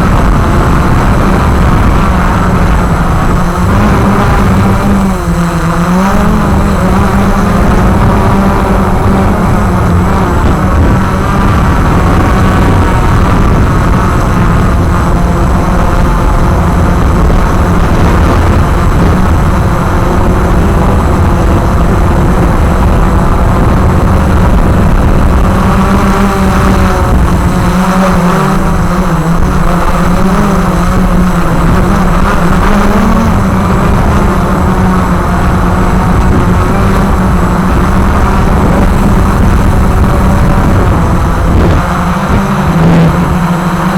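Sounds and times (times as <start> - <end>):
drone propellers whirring: 0.0 - 43.9.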